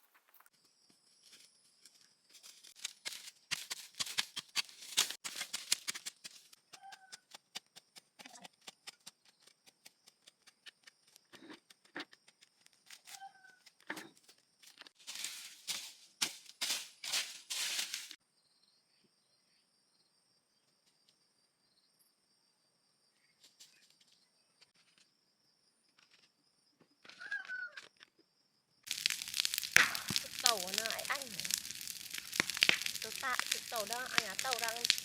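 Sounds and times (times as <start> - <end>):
rustling and crackling handling: 12.5 - 18.2, 28.9 - 35.0
high insect trill: 28.4 - 35.0.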